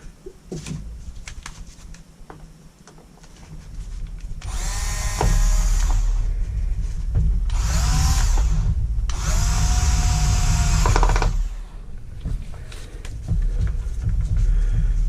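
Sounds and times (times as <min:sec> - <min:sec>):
steady low rumble: 0:03.4 - 0:15.0
power drill motor whine: 0:04.4 - 0:06.2, 0:07.5 - 0:11.7.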